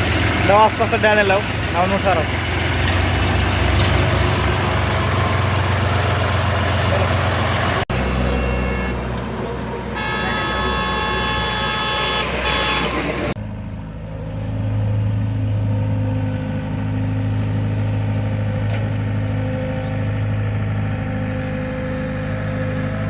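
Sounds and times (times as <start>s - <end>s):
heavy diesel engine running: 0.0s - 23.0s
vehicle horn: 8.0s - 9.1s, 9.8s - 13.4s.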